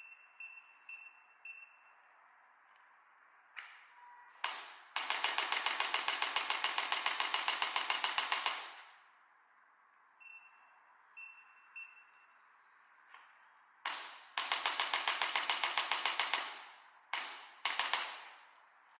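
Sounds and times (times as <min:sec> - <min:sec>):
short high beeps: 0:00.0 - 0:02.2, 0:10.2 - 0:12.6
sharp mechanical clicks: 0:04.4 - 0:08.9, 0:13.1 - 0:18.9.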